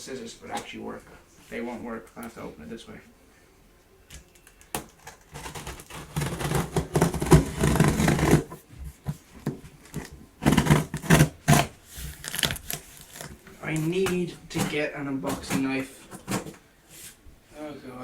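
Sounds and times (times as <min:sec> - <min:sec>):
packing tape tearing: 0:04.7 - 0:08.6, 0:09.8 - 0:13.4.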